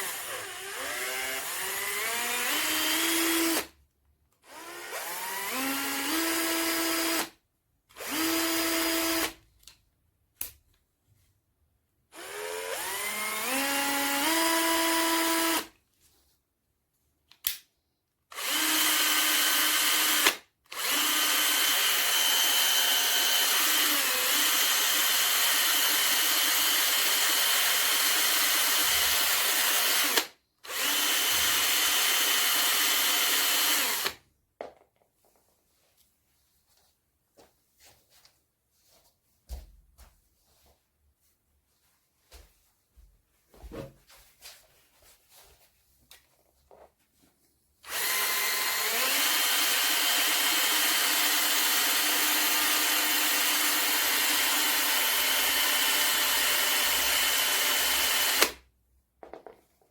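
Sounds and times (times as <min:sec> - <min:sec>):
cordless drill motor whine: 0:00.0 - 0:03.6, 0:04.5 - 0:07.2, 0:08.0 - 0:09.3, 0:12.2 - 0:15.6, 0:18.3 - 0:34.2, 0:47.9 - 0:58.6.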